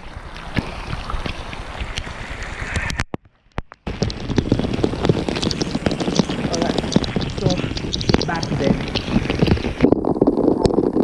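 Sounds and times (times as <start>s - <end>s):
rain hissing on water: 0.0s - 11.0s
wind noise: 0.0s - 11.0s
sharp drop ticks: 2.7s - 10.0s.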